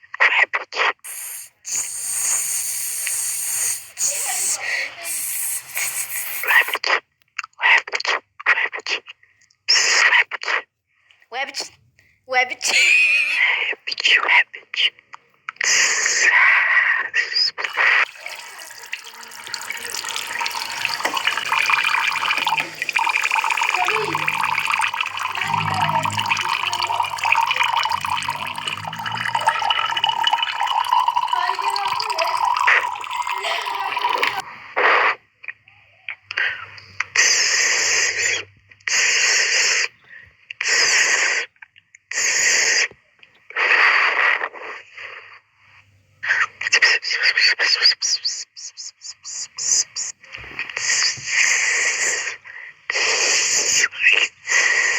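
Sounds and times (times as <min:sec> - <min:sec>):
person hissing: 0:01.1 - 0:06.8
water splashing trickle: 0:17.6 - 0:34.4.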